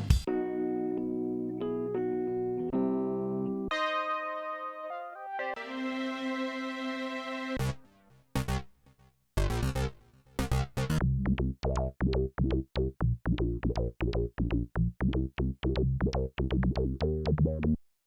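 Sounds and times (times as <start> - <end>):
synth chord: 3.7 - 8.7, 9.4 - 11.0
fast synth notes over bass: 7.6 - 8.7, 9.4 - 17.8.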